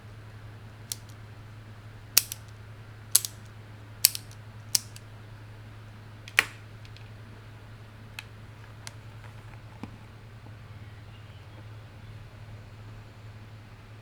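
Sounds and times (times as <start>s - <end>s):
mechanical keyboard keystrokes: 0.9s - 1.1s, 2.2s - 2.5s, 3.2s - 3.4s, 4.0s - 5.0s, 6.3s - 7.0s.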